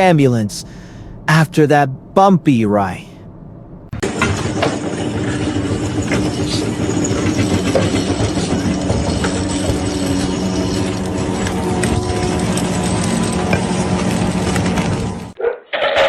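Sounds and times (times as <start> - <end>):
heavy engine running: 3.3 - 15.4
rattling clanking clatter: 4.0 - 16.0.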